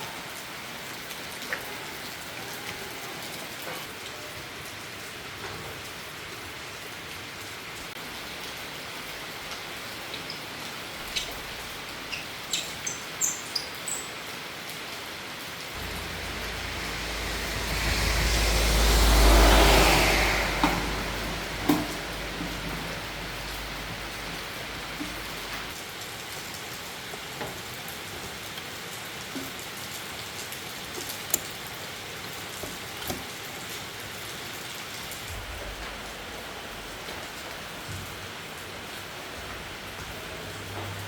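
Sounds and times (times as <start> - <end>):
steady rain falling: 0.0 - 41.0
rushing swell with low rumble: 15.8 - 25.7.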